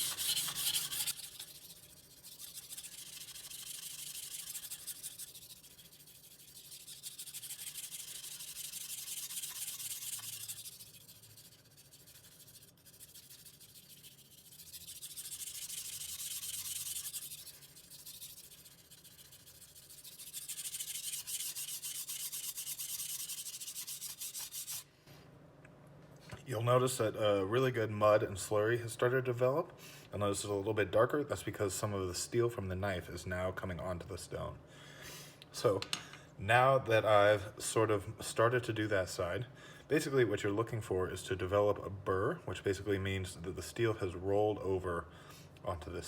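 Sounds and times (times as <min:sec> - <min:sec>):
knife scraping on wet whetstone: 0:00.0 - 0:24.9.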